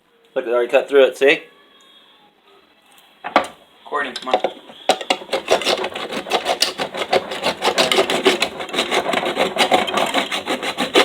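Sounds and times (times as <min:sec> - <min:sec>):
knife sawing through tin can: 0:04.9 - 0:11.0.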